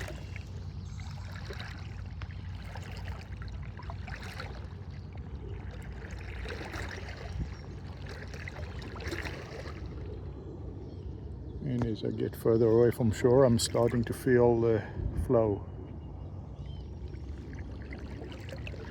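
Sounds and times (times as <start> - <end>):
rush of moving water: 0.0 - 10.1, 17.2 - 18.9
small splashes: 0.0 - 10.2, 17.1 - 18.9
water sloshing around legs: 0.0 - 10.4, 17.0 - 18.9.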